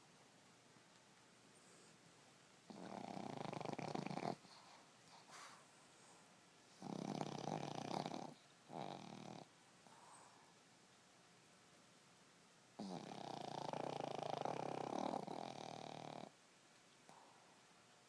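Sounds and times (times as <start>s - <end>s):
dog snoring: 2.7s - 5.6s, 6.7s - 10.5s, 12.8s - 16.4s.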